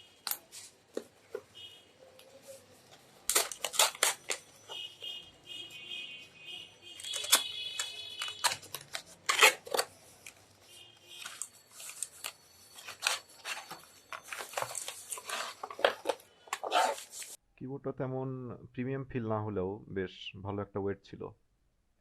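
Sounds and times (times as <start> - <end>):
packaging crinkling and tearing: 3.2 - 4.5, 7.0 - 10.5, 11.2 - 17.4.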